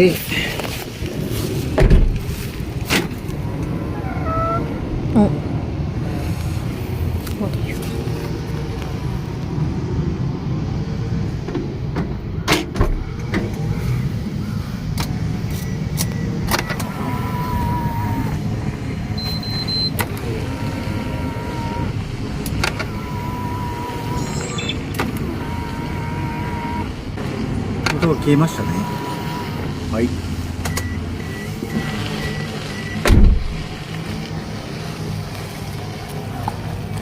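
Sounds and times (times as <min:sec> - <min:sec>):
steady low rumble: 0:00.0 - 0:27.8
mirror motor whine: 0:15.7 - 0:27.2, 0:27.9 - 0:29.9.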